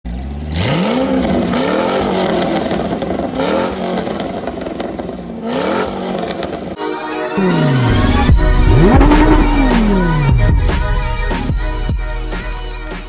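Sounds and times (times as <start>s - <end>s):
car engine revving hard: 0.1s - 6.8s, 7.4s - 11.5s.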